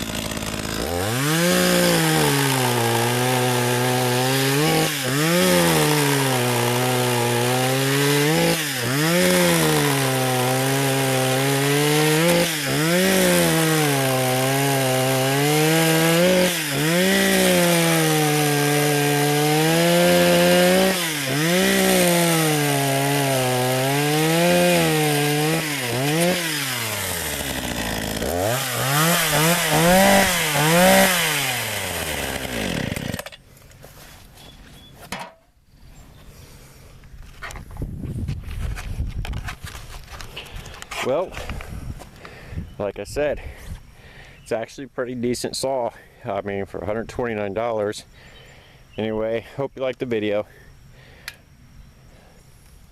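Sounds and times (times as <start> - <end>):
chainsaw cutting wood: 0.0 - 34.0.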